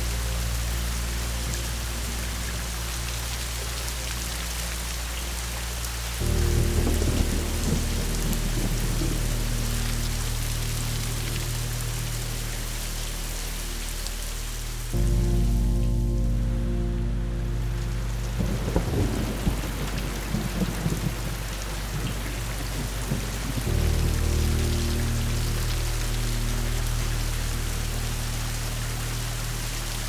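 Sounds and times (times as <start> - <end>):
low musical drone: 0.0 - 30.0
steady rain: 0.0 - 30.0
thunder rolling: 6.2 - 12.0, 17.5 - 28.1.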